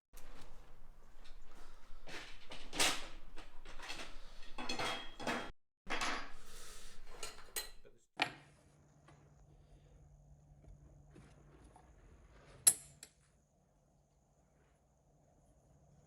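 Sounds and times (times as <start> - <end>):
metal parts clattering: 2.4 - 6.2.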